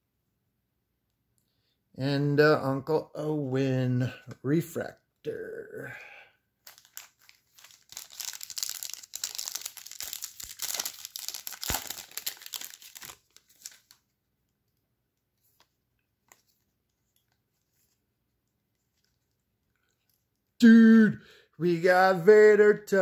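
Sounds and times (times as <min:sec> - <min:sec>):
wrapper tearing and crinkling: 0:06.6 - 0:14.0.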